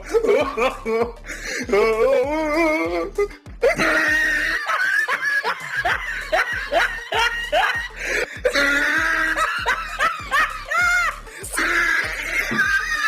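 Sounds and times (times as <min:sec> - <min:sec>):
music with steady low beat: 0:00.0 - 0:13.0
cartoonish laugh sound effect: 0:03.6 - 0:07.9, 0:08.5 - 0:13.0.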